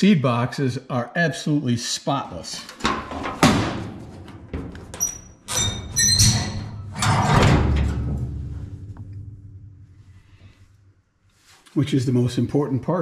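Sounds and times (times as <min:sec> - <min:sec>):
sheet metal lid clanking: 0:02.7 - 0:09.6.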